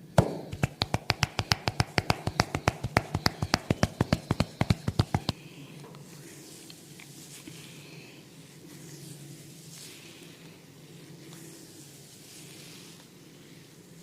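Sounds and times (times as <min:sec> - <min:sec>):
rapid tapping on a head: 0:00.0 - 0:05.4.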